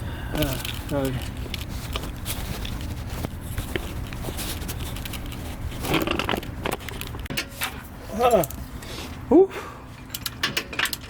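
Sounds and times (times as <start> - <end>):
steady low rumble: 0.0 - 10.4
handling clicks and rustling: 0.4 - 8.7.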